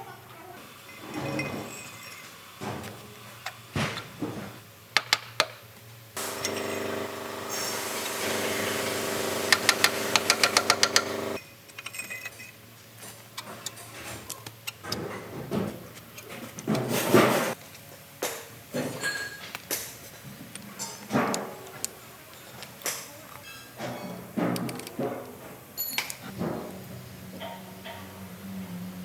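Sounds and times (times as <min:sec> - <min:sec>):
power tool motor running: 0:06.2 - 0:11.4.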